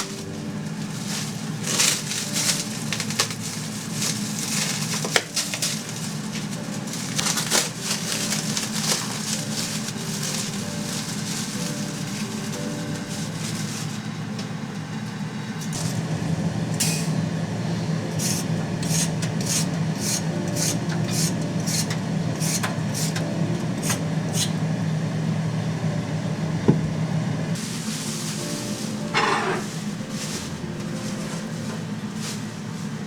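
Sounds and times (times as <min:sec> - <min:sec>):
food scraping strokes: 0:00.0 - 0:14.1, 0:18.0 - 0:24.6, 0:27.6 - 0:33.0.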